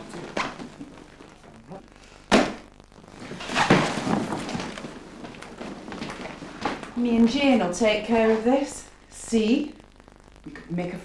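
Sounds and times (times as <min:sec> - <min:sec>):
scuffling and rustling: 0:03.0 - 0:08.6.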